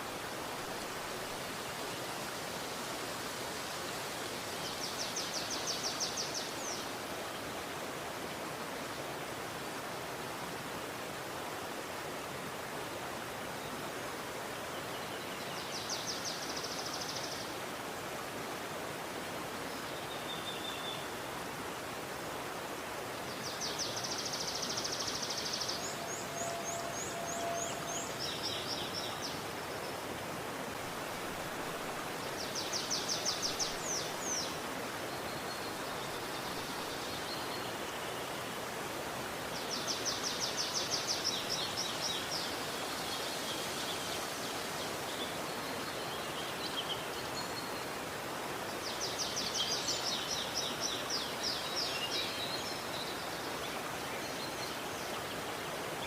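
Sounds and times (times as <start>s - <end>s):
river water rushing: 0.0s - 56.0s
bird singing high trills: 25.6s - 28.2s.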